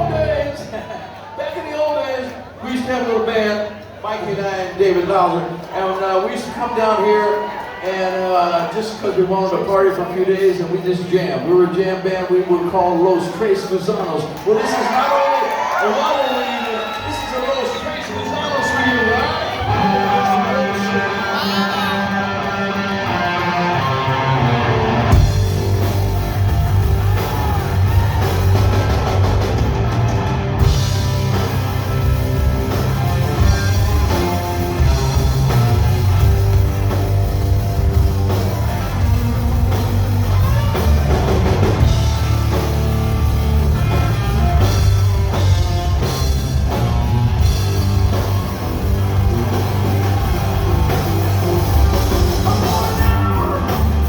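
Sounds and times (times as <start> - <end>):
rock band playing: 0.0 - 1.2, 12.6 - 54.0.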